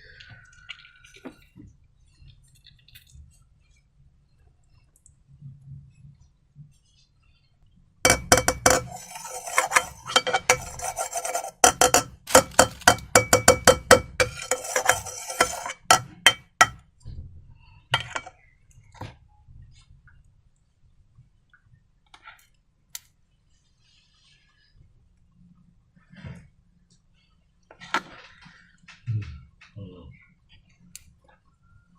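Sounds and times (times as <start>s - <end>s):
containers and utensils clattering: 8.1s - 16.8s, 18.0s - 18.3s.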